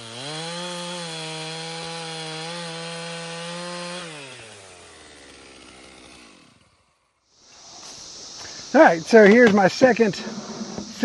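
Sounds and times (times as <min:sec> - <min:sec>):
sawmill engine running: 0:03.6 - 0:06.7, 0:09.2 - 0:11.0.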